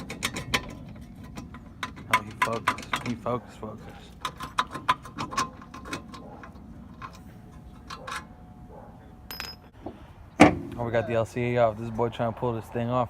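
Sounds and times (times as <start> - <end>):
hand tool clicking on metal bolt: 0.0 - 3.3.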